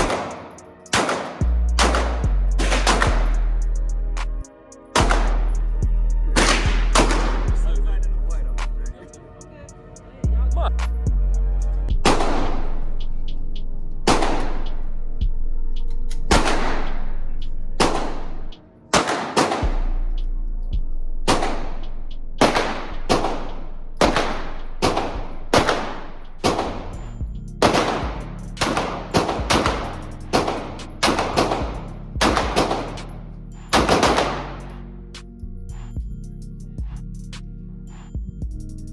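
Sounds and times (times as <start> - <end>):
gunshots: 0.0 - 3.5, 5.0 - 5.6, 6.4 - 7.8, 12.0 - 12.9, 14.1 - 14.6, 16.3 - 17.1, 17.8 - 19.9, 21.3 - 21.8, 22.4 - 27.0, 27.6 - 34.8.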